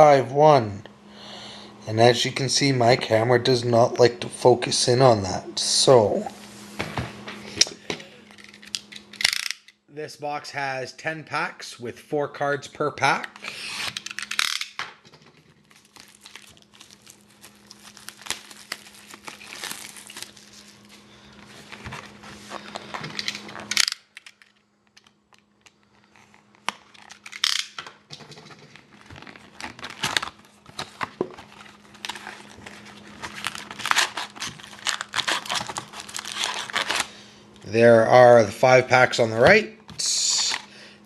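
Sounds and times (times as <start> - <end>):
plastic wrap crinkling and tearing: 15.5 - 24.5, 25.9 - 27.6, 28.8 - 37.2.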